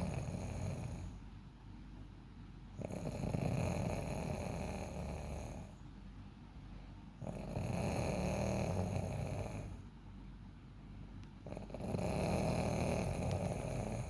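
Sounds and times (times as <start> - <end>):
person snoring: 0.0 - 1.2, 2.8 - 5.8, 7.2 - 9.8, 11.5 - 14.0.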